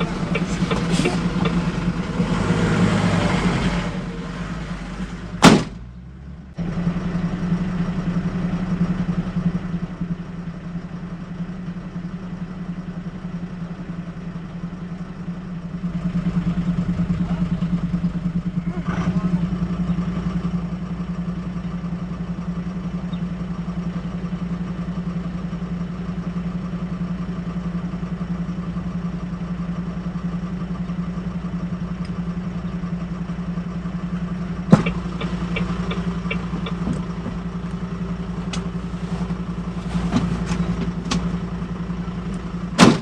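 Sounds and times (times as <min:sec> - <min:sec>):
engine idling: 0:00.0 - 0:43.0
sharp knock: 0:05.4 - 0:05.8.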